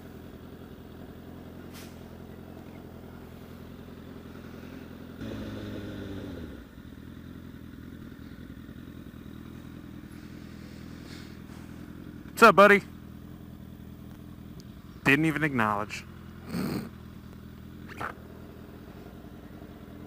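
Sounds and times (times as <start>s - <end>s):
motorcycle engine running: 0.0s - 20.0s
motorcycle throttle burst: 1.5s - 2.9s, 4.0s - 7.4s, 10.0s - 12.4s, 16.1s - 19.4s.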